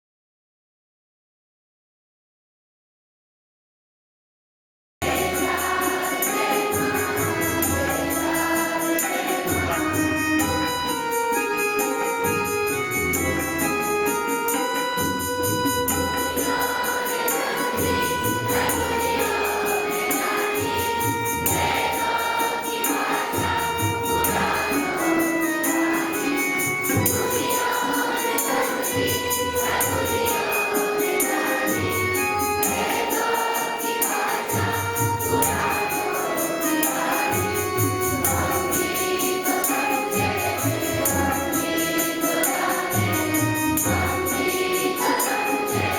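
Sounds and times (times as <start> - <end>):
group of voices singing: 5.0 - 45.9
jingling beat: 5.0 - 45.9.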